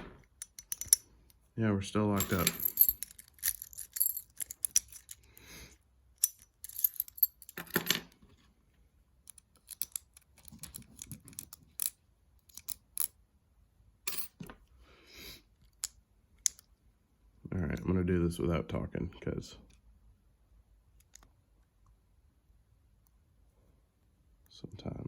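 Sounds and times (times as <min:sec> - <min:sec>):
lock pick clicking and scraping: 0:00.2 - 0:01.4, 0:02.3 - 0:05.3, 0:09.2 - 0:13.2.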